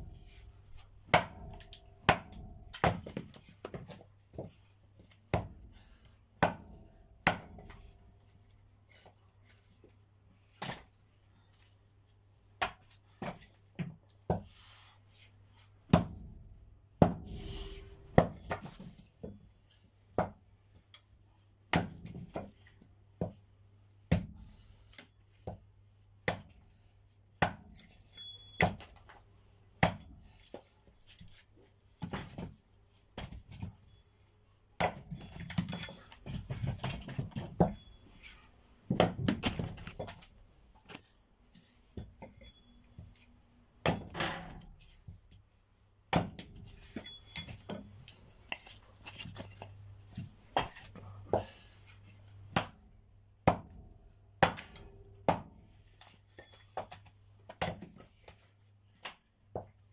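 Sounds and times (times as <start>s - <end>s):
axe chopping firewood: 1.1s - 3.2s, 6.4s - 7.7s, 21.7s - 22.4s, 34.8s - 35.8s, 46.1s - 46.5s, 52.5s - 52.8s.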